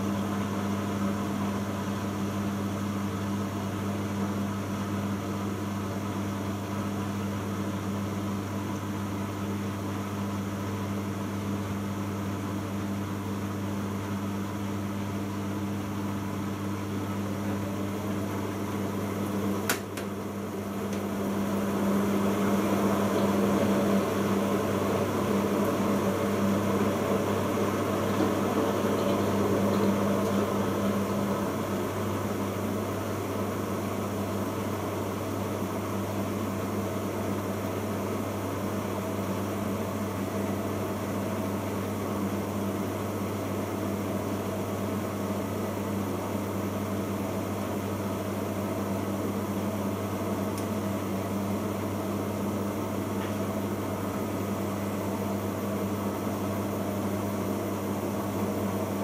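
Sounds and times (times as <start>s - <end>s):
washing machine drum spinning: 17.8s - 37.0s.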